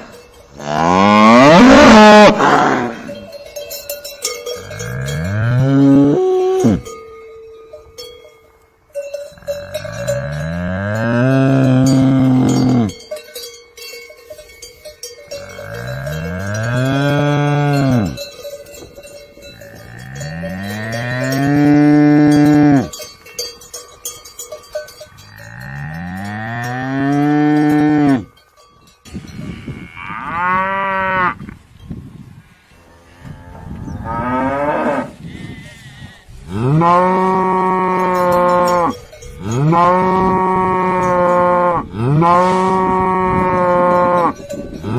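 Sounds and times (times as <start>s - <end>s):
cattle mooing: 0.6s - 3.1s, 10.0s - 12.9s.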